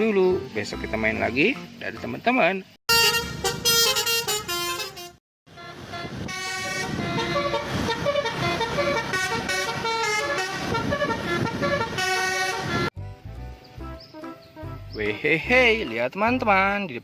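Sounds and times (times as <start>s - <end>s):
buzzy horn-like melody: 2.9s - 12.9s.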